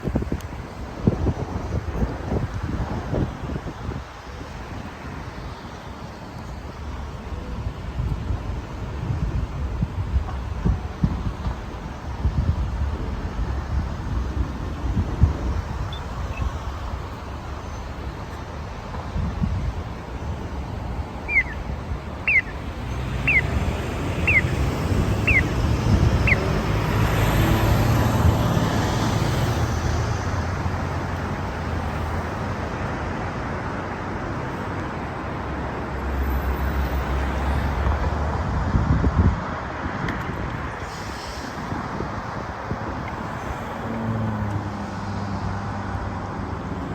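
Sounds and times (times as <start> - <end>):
road traffic passing: 0.0 - 46.9
pedestrian signal chirping: 15.7 - 18.3, 20.0 - 27.6.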